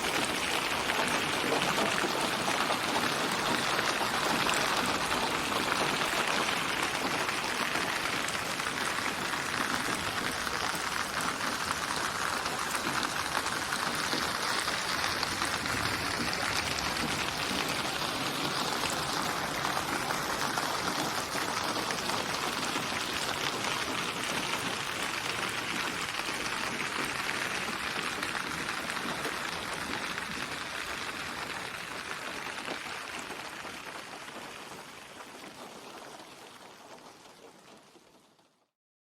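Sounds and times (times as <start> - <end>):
dense rain: 0.0 - 38.7.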